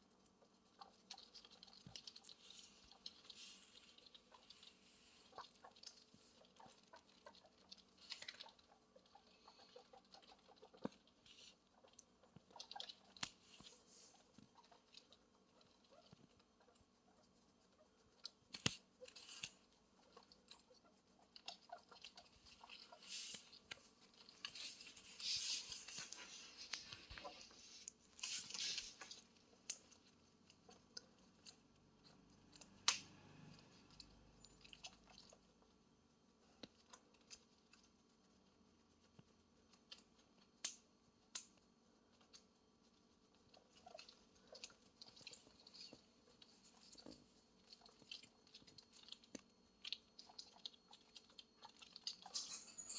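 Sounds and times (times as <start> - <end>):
rustling: 0.0 - 32.8
guinea pig chewing food: 0.0 - 52.9.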